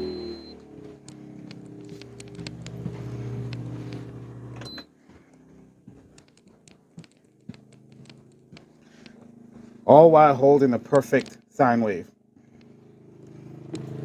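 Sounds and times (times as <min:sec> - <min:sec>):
generator engine humming: 0:00.0 - 0:14.0
light clicks: 0:01.0 - 0:04.1.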